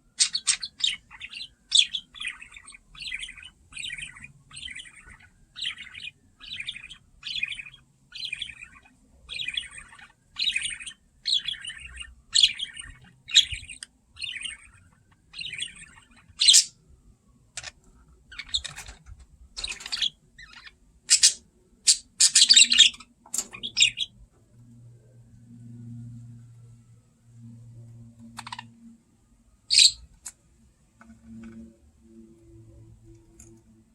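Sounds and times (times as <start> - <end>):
budgerigar chirping: 0.2 - 16.8, 19.6 - 24.1, 29.7 - 30.1.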